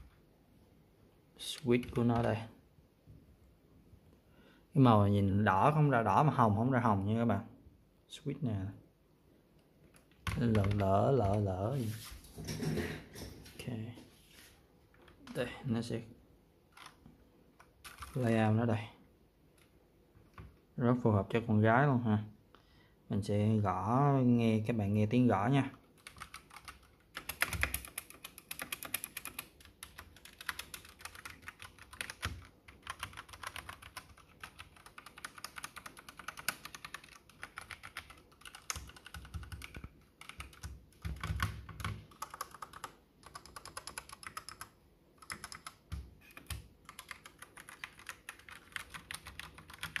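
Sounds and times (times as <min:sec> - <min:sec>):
mechanical keyboard typing: 0:09.9 - 0:11.5, 0:16.7 - 0:17.0, 0:17.6 - 0:18.4, 0:25.7 - 0:50.0.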